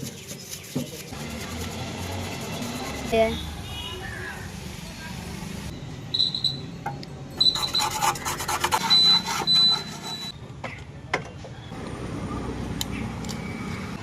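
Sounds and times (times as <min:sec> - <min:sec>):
metal scraping: 0:07.4 - 0:10.3.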